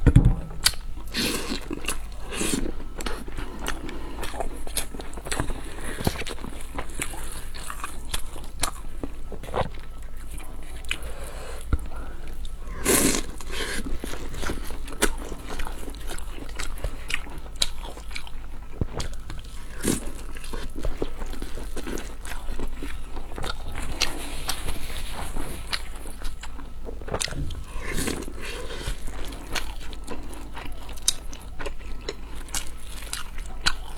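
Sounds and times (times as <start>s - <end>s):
chewing and biting: 0.1s - 33.9s.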